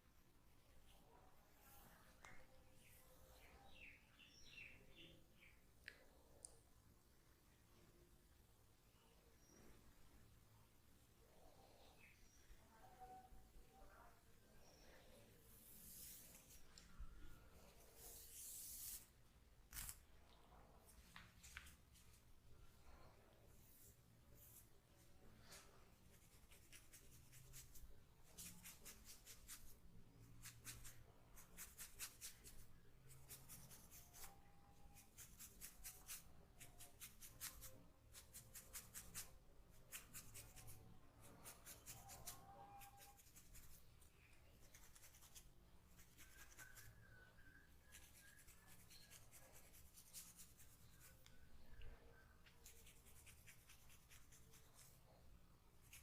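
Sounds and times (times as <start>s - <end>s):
comb scratching through hair: 15.5s - 16.7s, 17.7s - 19.1s, 26.1s - 29.8s, 30.4s - 43.9s, 44.6s - 47.1s, 47.8s - 51.2s, 52.6s - 55.0s.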